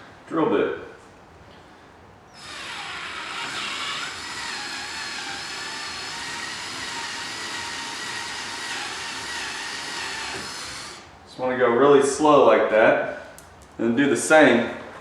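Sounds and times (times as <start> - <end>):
power drill whining: 2.4 - 11.1.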